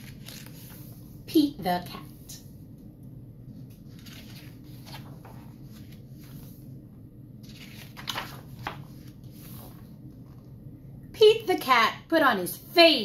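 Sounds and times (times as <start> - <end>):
book pages rustling: 0.0 - 1.1, 3.5 - 6.7, 7.4 - 10.5
steady low hum: 0.0 - 13.0.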